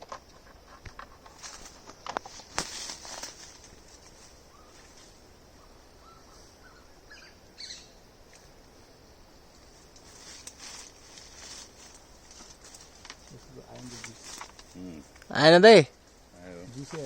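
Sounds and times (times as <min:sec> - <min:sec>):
handling clicks and rustles: 0:00.0 - 0:05.1, 0:09.5 - 0:15.4
steady high hiss: 0:00.0 - 0:17.0
faint bird chirps: 0:04.4 - 0:09.2.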